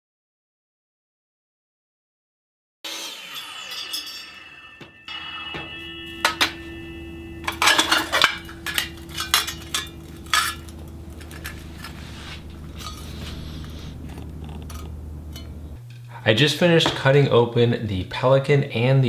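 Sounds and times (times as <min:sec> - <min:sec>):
low steady hum: 0:04.0 - 0:18.9
metal pieces clinking: 0:06.2 - 0:15.6.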